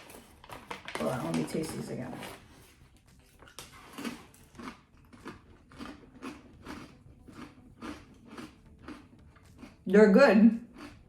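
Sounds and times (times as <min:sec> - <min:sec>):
chewing crunchy rice cracker: 0:02.2 - 0:09.9, 0:10.6 - 0:11.0.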